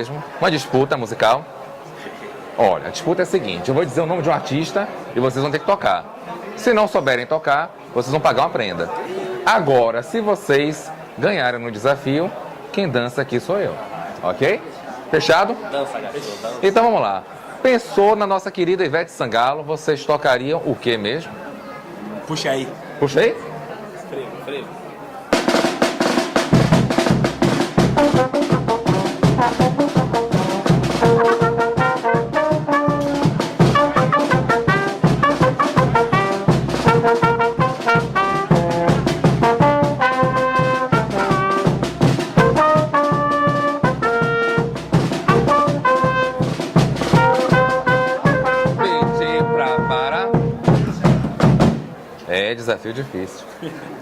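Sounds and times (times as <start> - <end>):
brass band melody: 25.3 - 52.0
marching drums: 25.3 - 52.0.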